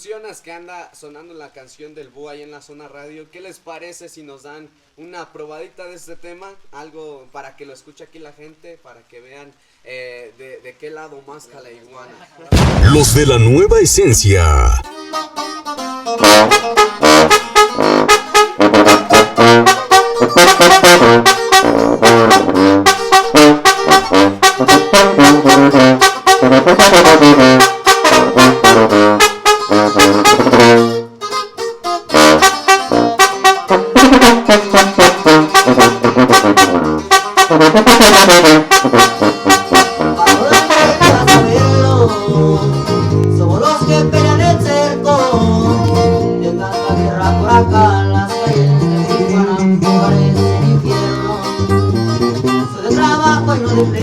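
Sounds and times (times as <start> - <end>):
band with tuba and alto horn: 16.2 - 31.2, 32.0 - 46.3.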